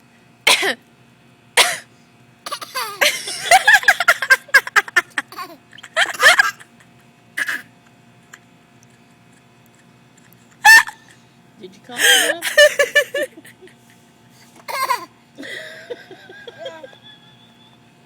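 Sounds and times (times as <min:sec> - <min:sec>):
baby imitation coughs: 0:00.5 - 0:00.8, 0:01.6 - 0:01.9, 0:02.5 - 0:03.0, 0:05.3 - 0:05.6, 0:07.4 - 0:07.7, 0:14.7 - 0:15.1
baby laughing and giggling: 0:02.5 - 0:06.6, 0:07.4 - 0:07.7, 0:14.7 - 0:15.1, 0:16.0 - 0:17.0.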